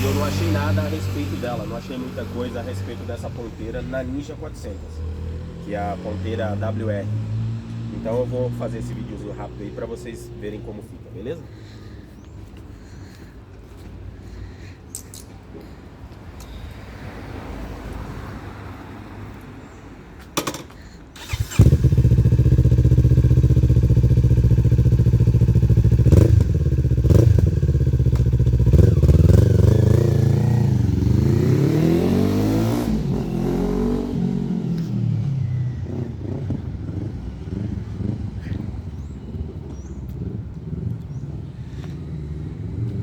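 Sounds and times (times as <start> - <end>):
motorcycle engine revving: 0.0 - 3.6, 21.2 - 43.0.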